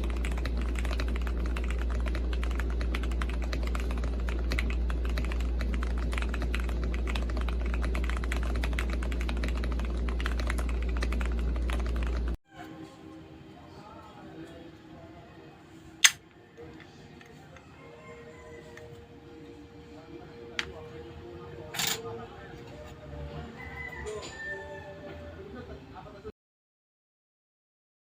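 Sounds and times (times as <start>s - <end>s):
mechanical keyboard typing: 0.0s - 12.4s
steady low hum: 0.0s - 12.4s.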